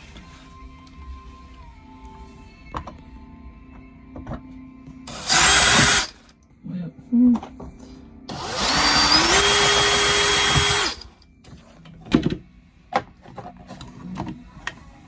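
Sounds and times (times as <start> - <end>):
cordless drill motor spinning: 5.1 - 6.2, 8.3 - 11.2.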